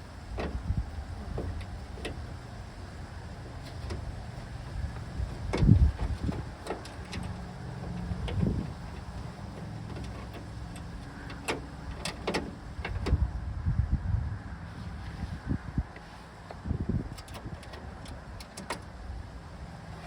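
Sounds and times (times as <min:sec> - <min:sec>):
sharp metallic clicks: 0:04.9 - 0:13.2
rustles of handling: 0:14.6 - 0:16.6.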